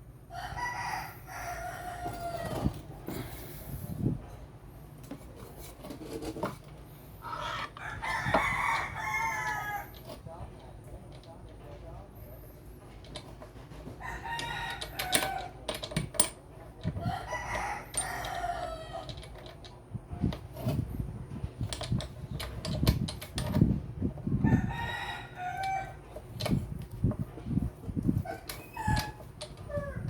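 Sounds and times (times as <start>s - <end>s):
rooster crowing: 0.3s - 2.7s, 7.4s - 10.0s, 14.0s - 15.6s, 17.0s - 19.1s, 24.4s - 26.0s.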